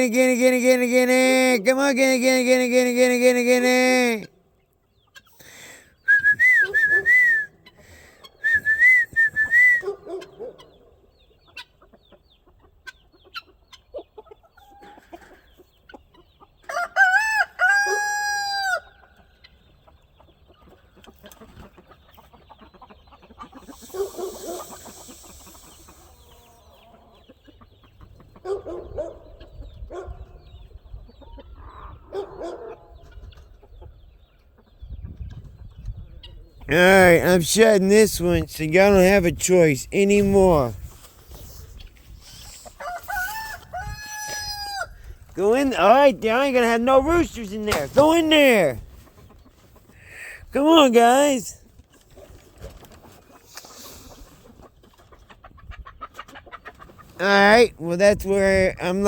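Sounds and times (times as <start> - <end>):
chickens clucking: 4.0 - 6.0, 9.8 - 59.0
rooster crowing: 16.7 - 18.9.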